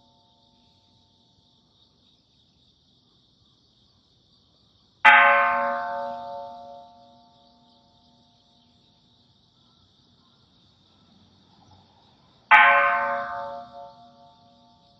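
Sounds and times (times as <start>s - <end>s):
temple bell ringing: 5.1s - 7.3s, 12.5s - 14.7s.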